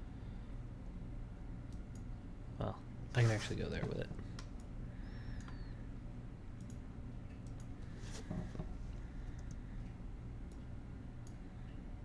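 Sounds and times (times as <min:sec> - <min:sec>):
low room hum: 0:00.0 - 0:12.0
computer mouse clicks: 0:06.6 - 0:07.8, 0:09.3 - 0:09.6.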